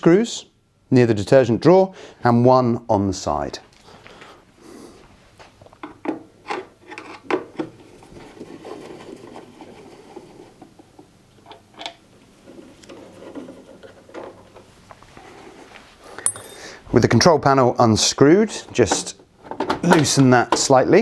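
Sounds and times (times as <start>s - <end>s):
scraping and rubbing on plastic: 8.0s - 10.6s.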